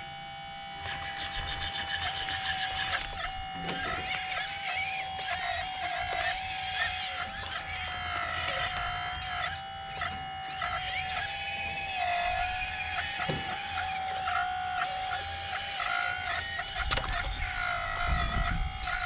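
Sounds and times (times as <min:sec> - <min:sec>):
electric pump motor whining: 0:00.0 - 0:19.0
birds chirping: 0:00.8 - 0:11.2.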